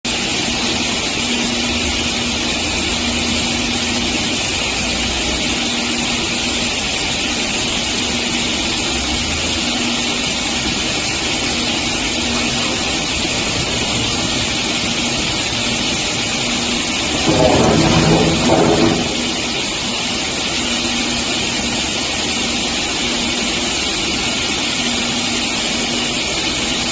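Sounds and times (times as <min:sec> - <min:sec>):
saw machine whirring: 0:00.4 - 0:20.1.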